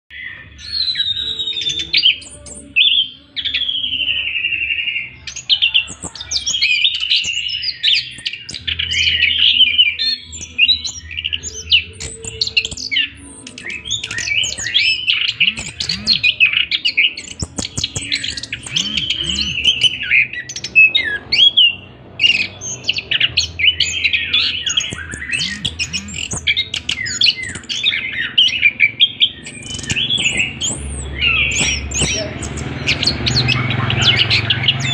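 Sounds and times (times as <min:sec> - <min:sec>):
thrush singing: 0:00.2 - 0:34.9.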